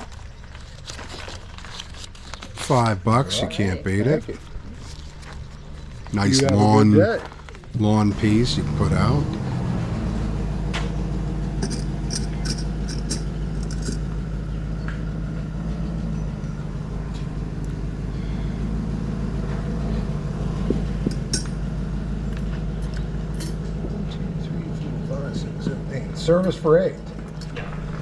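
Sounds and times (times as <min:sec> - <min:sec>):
steady low rumble: 0:02.8 - 0:28.0
light sharp clinks: 0:09.4 - 0:18.6, 0:20.6 - 0:24.2.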